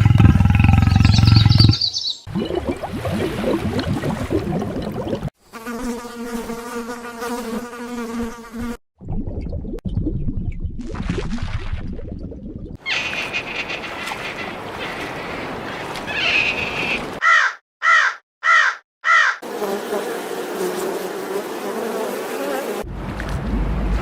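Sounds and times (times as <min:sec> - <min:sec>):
bird harsh calls: 0:00.6 - 0:02.3, 0:12.8 - 0:19.4
outdoor background noise: 0:19.4 - 0:24.0.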